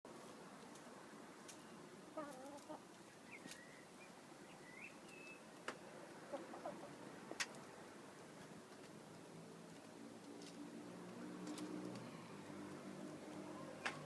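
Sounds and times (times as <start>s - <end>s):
chickens clucking softly: 2.1s - 3.5s, 6.1s - 7.6s.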